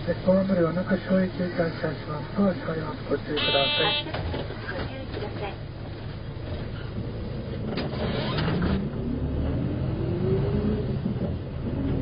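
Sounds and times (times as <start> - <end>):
bus diesel engine accelerating: 4.1 - 12.0.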